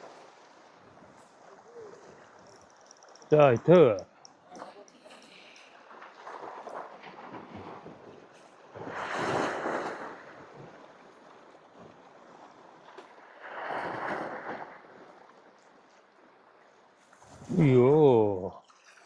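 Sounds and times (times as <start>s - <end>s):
waves surging against rocks: 5.9s - 15.5s.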